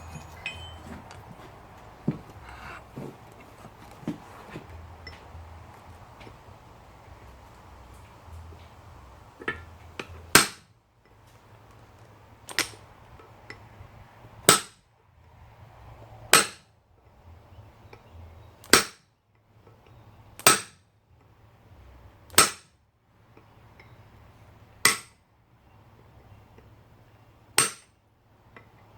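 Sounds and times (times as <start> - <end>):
hammer striking anvil: 0.0 - 1.5.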